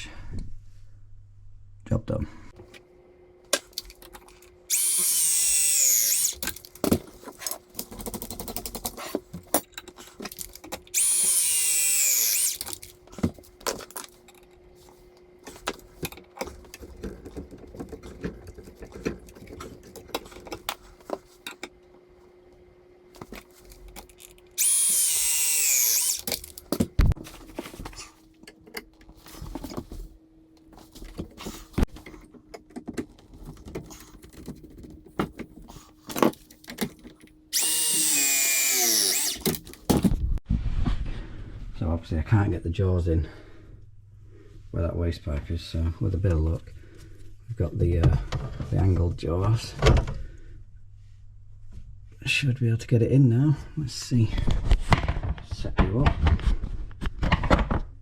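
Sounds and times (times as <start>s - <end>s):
pipework and tools clicking: 3.5s - 14.6s, 23.3s - 27.1s, 36.1s - 39.8s
cordless power tool whining: 4.7s - 6.5s, 10.9s - 12.9s, 24.6s - 26.6s, 37.5s - 39.6s.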